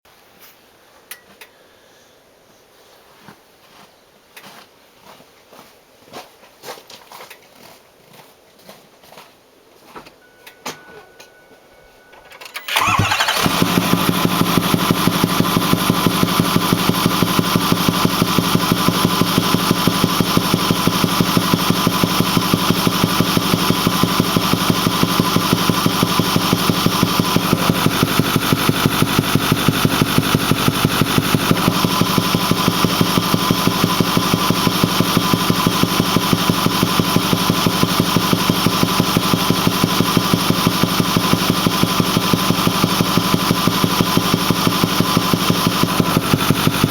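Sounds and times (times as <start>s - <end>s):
diesel engine starting and running: 12.2s - 46.9s
repeating intake thumping: 12.7s - 46.9s.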